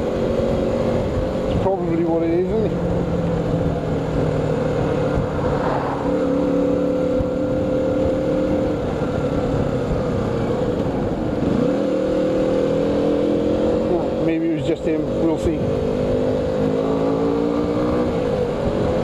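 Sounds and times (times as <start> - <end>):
motorcycle engine running: 0.0 - 19.0
wet road noise: 0.0 - 19.0
wind noise: 2.5 - 12.8.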